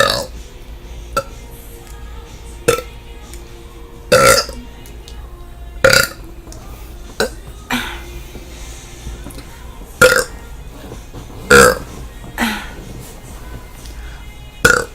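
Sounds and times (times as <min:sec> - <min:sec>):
woman burping: 0:04.1 - 0:04.6.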